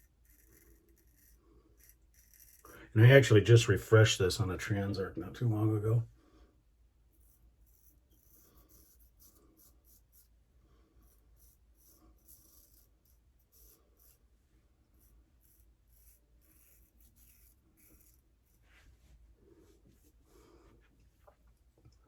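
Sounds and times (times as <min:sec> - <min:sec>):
straight razor scraping whiskers: 0:00.0 - 0:03.2, 0:07.1 - 0:10.4, 0:11.0 - 0:14.2, 0:14.9 - 0:18.6.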